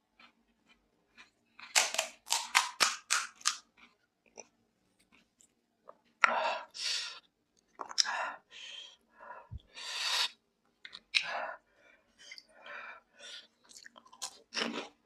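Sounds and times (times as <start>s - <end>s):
crisp shells cracking: 1.7s - 3.6s.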